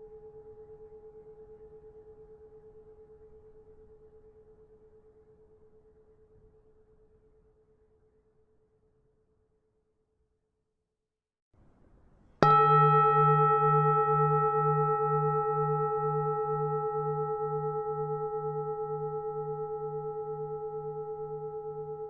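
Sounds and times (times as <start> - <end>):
temple bell ringing: 12.4 - 22.0.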